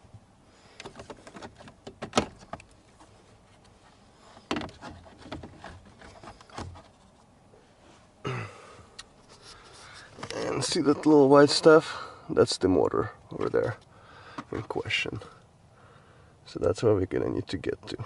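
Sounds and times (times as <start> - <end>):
plastic dashboard parts rubbing: 0.8 - 7.3, 9.2 - 11.8.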